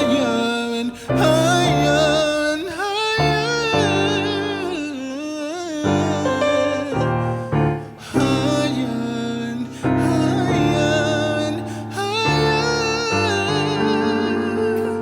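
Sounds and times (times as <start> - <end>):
person singing with vibrato: 0.0 - 15.0.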